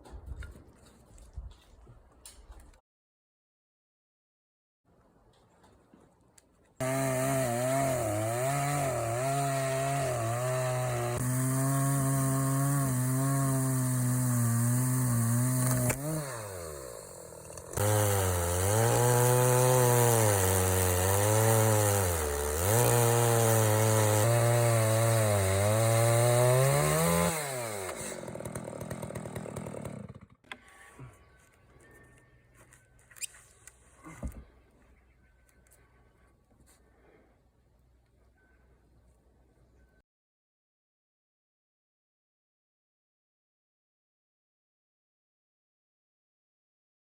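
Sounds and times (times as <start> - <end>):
chainsaw engine cutting log: 6.8 - 30.9.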